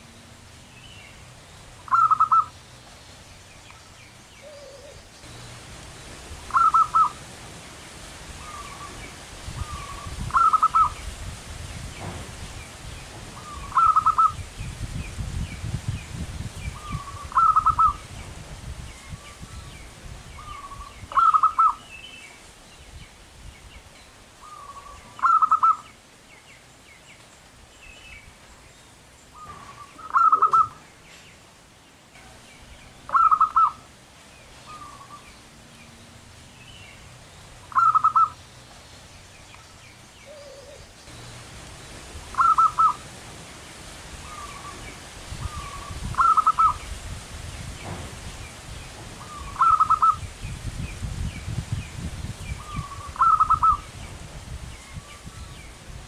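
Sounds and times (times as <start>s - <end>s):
dove cooing with trills: 1.8s - 2.6s, 4.4s - 5.1s, 6.4s - 7.2s, 8.4s - 11.0s, 13.4s - 14.4s, 16.8s - 18.0s, 20.4s - 21.8s, 24.4s - 25.8s, 29.4s - 30.8s, 33.1s - 33.9s, 37.7s - 38.4s, 40.2s - 40.9s, 42.3s - 43.1s, 45.4s - 46.8s, 49.2s - 50.2s, 52.6s - 53.9s.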